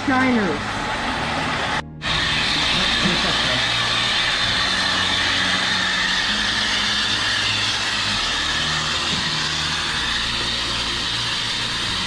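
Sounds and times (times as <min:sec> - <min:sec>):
mechanical hum: 0:00.0 - 0:12.0
hiss: 0:02.0 - 0:12.0.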